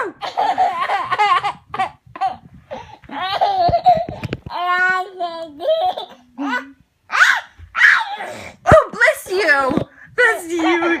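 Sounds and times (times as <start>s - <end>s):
toddler laughing and babbling: 0.0s - 8.3s.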